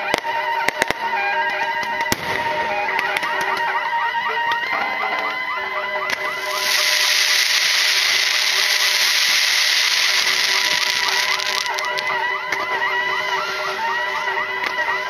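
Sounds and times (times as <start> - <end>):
fireworks whistling: 0.0 - 4.5, 5.1 - 15.0
loud dense hiss: 6.2 - 12.0.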